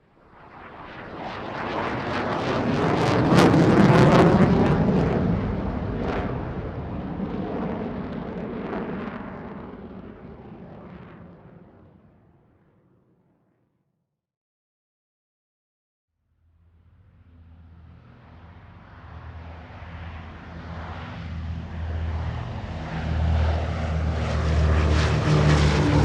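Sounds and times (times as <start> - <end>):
airplane passing by: 0.2 - 11.2, 16.6 - 26.0.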